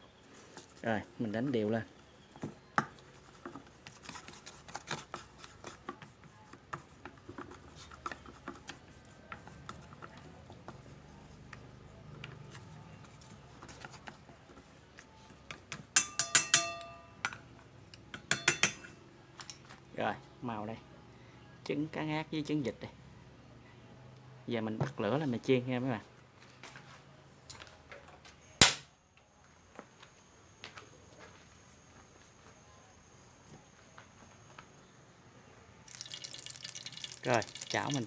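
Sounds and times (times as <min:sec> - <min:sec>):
ringing taps on a bowl: 0:15.7 - 0:17.4, 0:18.1 - 0:19.0
utensil beating eggs in a bowl: 0:35.9 - 0:38.0.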